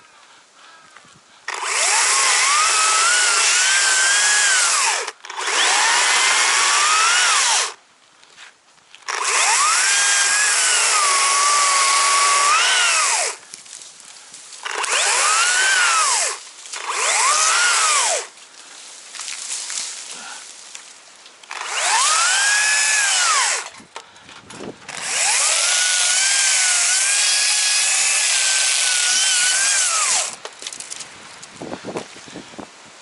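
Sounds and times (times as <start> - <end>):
chainsaw revving and cutting wood: 1.5 - 7.8, 9.0 - 13.4, 14.6 - 18.3, 21.4 - 23.7, 24.9 - 30.5.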